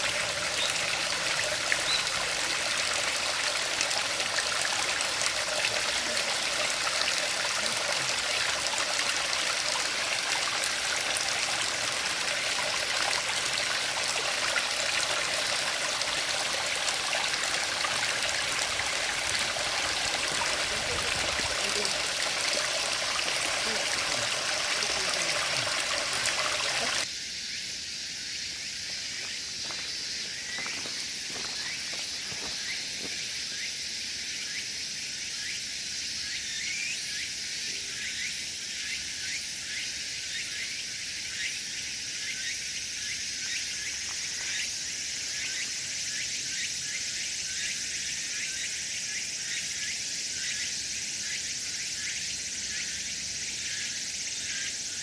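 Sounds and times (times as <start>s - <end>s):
running water stream: 0.0s - 27.1s
insects chirping: 0.0s - 55.0s
high-pitched insect hiss: 26.2s - 55.0s.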